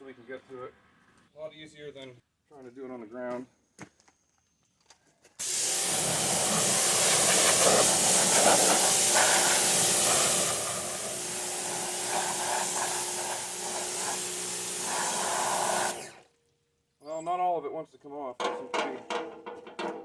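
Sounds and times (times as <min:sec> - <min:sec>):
pressure washer water jet hiss: 0:05.4 - 0:16.2.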